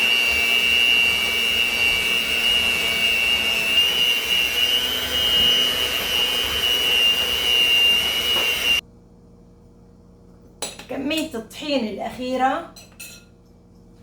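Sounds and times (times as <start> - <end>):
electric mixer whining: 0.0 - 8.8.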